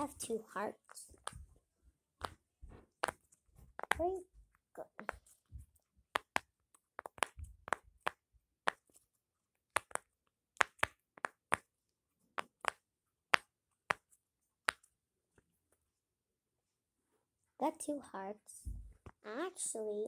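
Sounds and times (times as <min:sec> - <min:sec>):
fidget toy clicks and taps: 0:02.2 - 0:04.2, 0:04.8 - 0:09.0, 0:09.7 - 0:11.7, 0:12.4 - 0:14.9.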